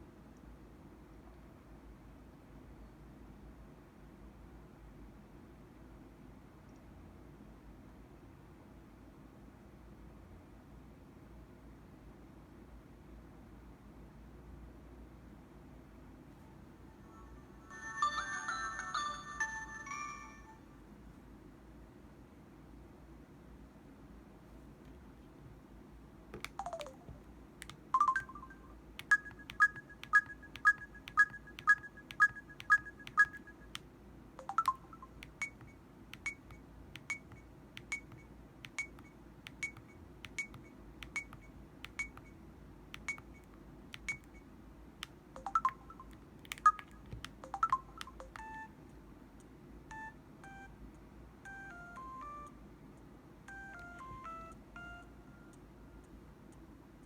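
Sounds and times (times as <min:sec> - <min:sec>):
mobile phone electronic beeps: 0:26.5 - 0:27.2, 0:28.0 - 0:33.7, 0:34.4 - 0:42.4, 0:43.0 - 0:44.5, 0:45.4 - 0:48.7, 0:49.9 - 0:50.7, 0:51.4 - 0:52.6, 0:53.5 - 0:55.6.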